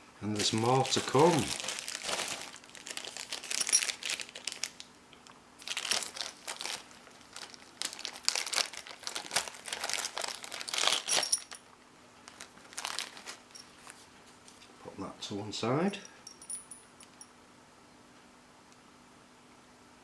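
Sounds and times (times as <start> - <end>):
crinkly wrapping crackling: 0.2 - 5.0, 5.6 - 11.6, 12.2 - 14.1.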